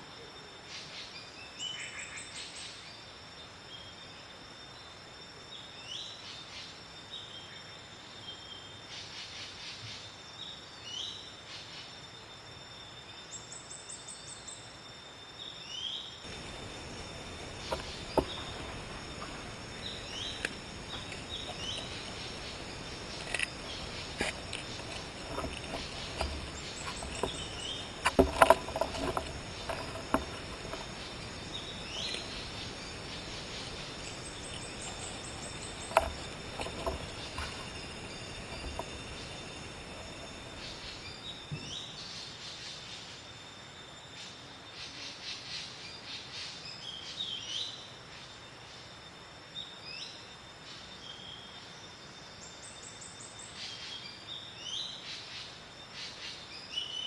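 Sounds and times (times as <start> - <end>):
high insect drone: 0.0 - 57.0
sharp clicks and knocks: 17.5 - 19.5, 23.1 - 31.2, 34.4 - 40.4.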